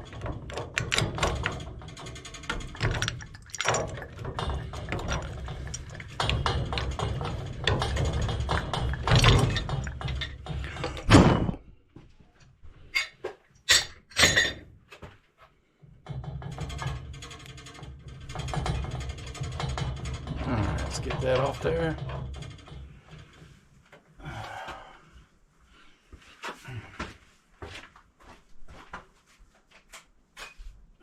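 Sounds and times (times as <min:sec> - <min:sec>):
wrenches and pipe fittings clanking: 0:00.0 - 0:11.6, 0:12.9 - 0:14.7, 0:16.1 - 0:23.6.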